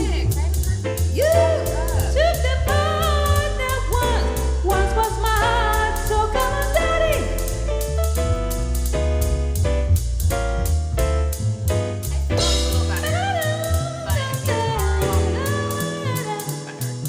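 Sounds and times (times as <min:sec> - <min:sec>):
heavy bass: 0:00.0 - 0:17.0
steady beat: 0:00.0 - 0:17.0
person singing: 0:01.1 - 0:07.6, 0:12.4 - 0:17.0
keyboard chords: 0:01.2 - 0:17.0.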